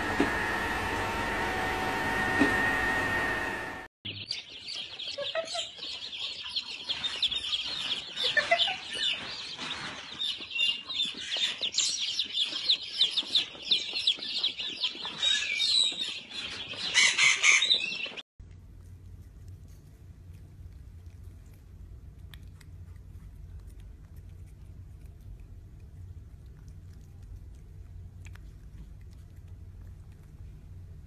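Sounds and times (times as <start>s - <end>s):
birds chirping and peeping: 4.1s - 18.2s.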